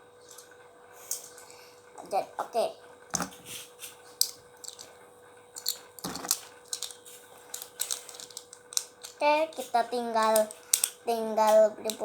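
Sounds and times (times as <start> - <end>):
hands handling toy spinning top: 3.2 - 4.9, 5.6 - 12.0.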